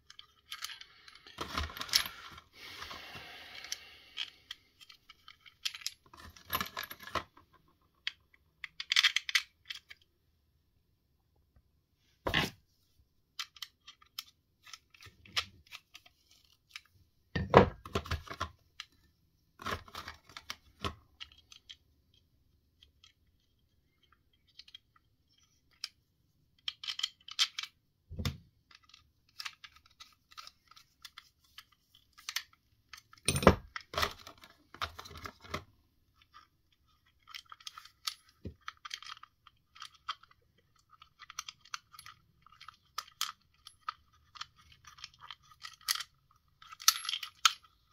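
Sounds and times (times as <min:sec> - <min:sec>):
small parts and tools handled: 0:00.0 - 0:10.2, 0:12.2 - 0:47.9.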